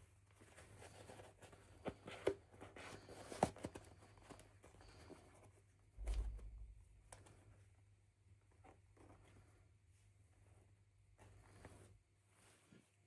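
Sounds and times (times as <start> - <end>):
low thump: 6.0 - 6.8.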